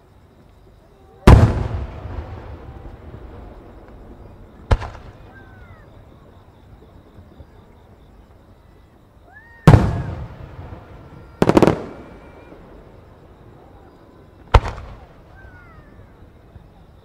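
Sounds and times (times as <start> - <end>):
firework bangs: 1.2 - 6.0, 9.6 - 16.1
firework boom: 1.3 - 5.4, 9.7 - 12.6.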